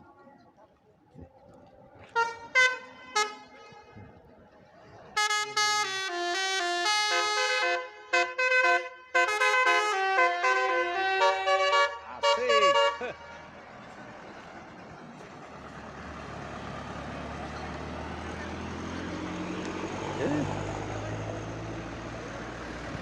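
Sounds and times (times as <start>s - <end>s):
bus musical horn playing tune: 2.1s - 4.2s, 5.2s - 13.7s.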